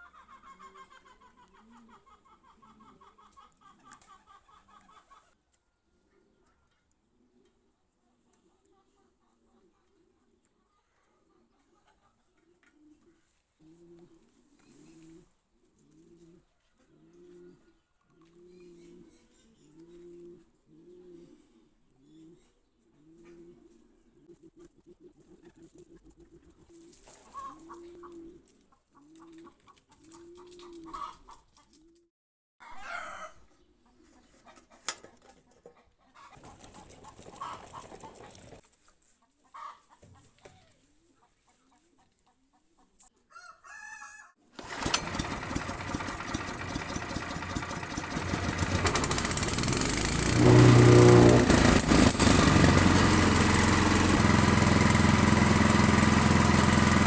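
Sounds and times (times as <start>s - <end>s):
chickens clucking: 0.0s - 5.4s, 11.3s - 14.3s, 23.1s - 32.0s, 32.7s - 44.2s
pigeons cooing: 15.9s - 25.3s
wood chipper engine running: 44.6s - 57.0s.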